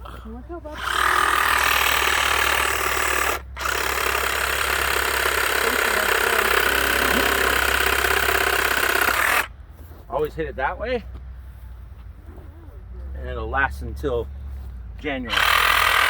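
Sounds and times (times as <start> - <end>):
power saw cutting tree trunk: 0.0 - 9.5, 15.1 - 16.0.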